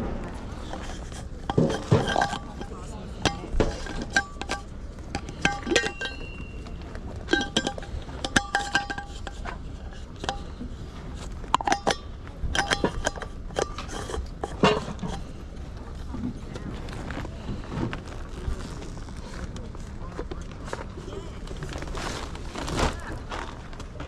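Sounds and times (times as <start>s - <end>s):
crockery or glass clinking: 1.4s - 9.4s, 11.6s - 15.3s.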